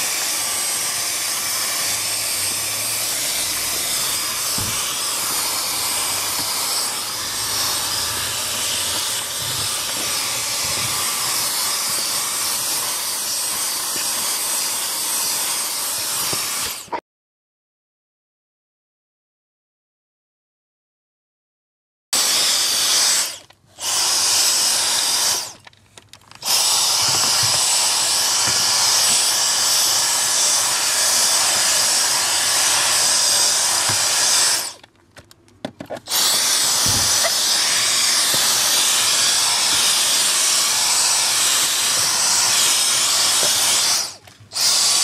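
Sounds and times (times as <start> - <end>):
vacuum cleaner motor whine: 0.0 - 16.9, 22.2 - 25.7, 26.4 - 34.9, 36.1 - 45.0.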